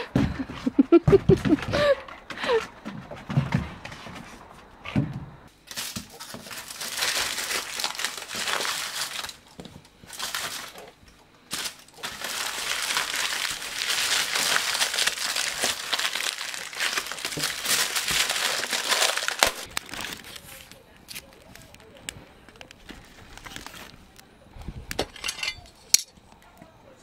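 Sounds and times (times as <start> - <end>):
dry crinkling rustle: 5.6 - 25.0.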